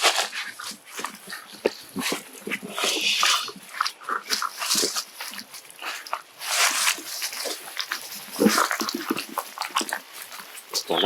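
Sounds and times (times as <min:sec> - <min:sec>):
rustling: 0:00.0 - 0:11.0
short animal calls: 0:10.8 - 0:11.0.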